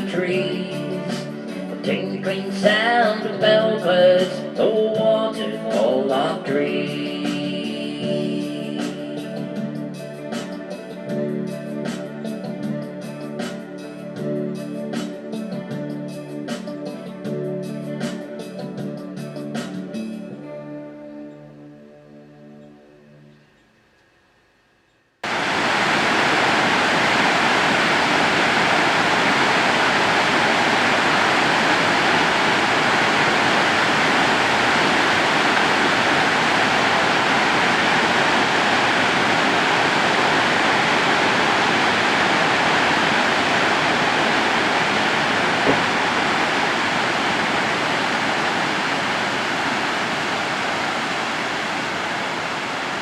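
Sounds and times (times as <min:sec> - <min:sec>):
waterfall rushing water: 0:25.2 - 0:53.0.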